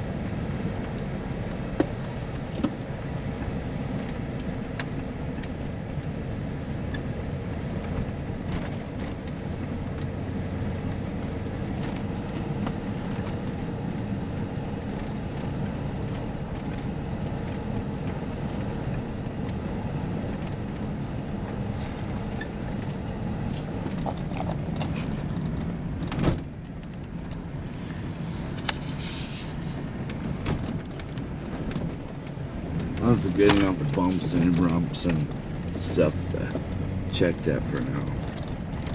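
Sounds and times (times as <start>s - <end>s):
engine and tyre noise in cab: 0.0s - 38.9s.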